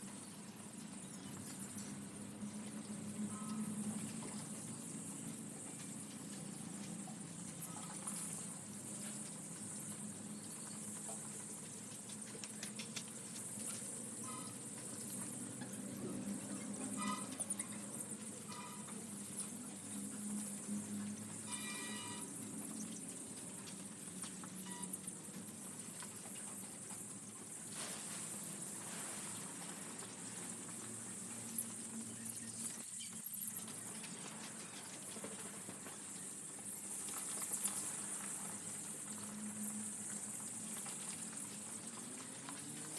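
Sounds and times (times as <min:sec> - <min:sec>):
chicks pecking and scratching: 0:00.0 - 0:42.9.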